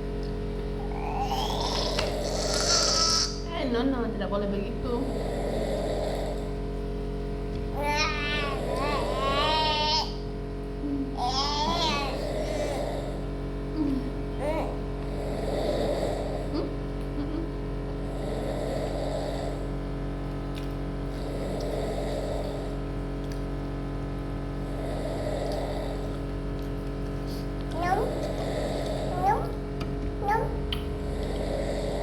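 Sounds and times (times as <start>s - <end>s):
steady low hum: 0.0s - 32.0s
person snoring: 0.8s - 3.4s, 5.0s - 6.5s, 7.7s - 10.2s, 10.8s - 16.7s, 18.0s - 19.7s, 21.2s - 22.8s, 24.6s - 26.2s, 27.8s - 29.5s, 30.2s - 32.0s.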